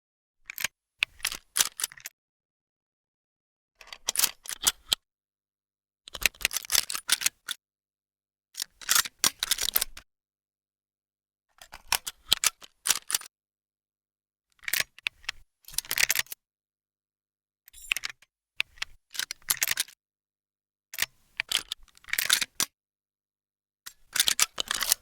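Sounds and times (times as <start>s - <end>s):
gun mechanism metallic clicks: 24.1s - 25.0s.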